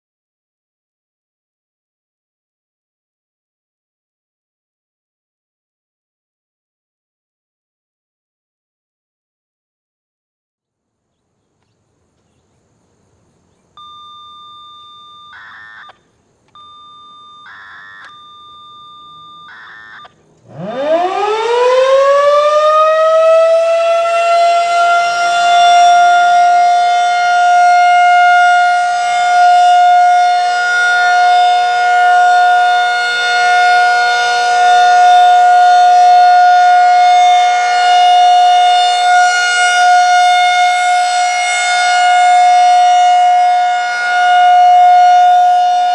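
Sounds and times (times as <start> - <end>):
steady electronic tone: 13.8 - 16.0, 16.6 - 20.2
short tone bursts: 13.8 - 20.2
rotating warning siren: 13.8 - 45.9.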